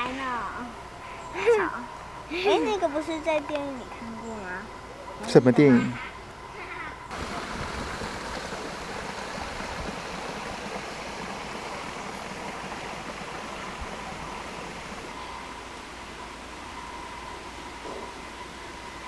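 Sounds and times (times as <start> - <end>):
steady rushing noise: 7.1 - 15.2.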